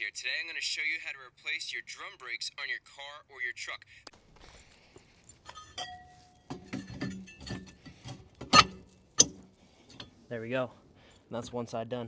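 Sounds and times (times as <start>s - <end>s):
metal tools clicking and clinking: 4.6s - 10.2s.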